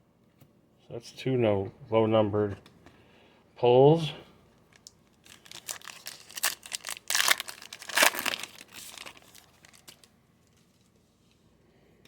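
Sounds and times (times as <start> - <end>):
foil pack tearing and crinkling: 5.2 - 10.1.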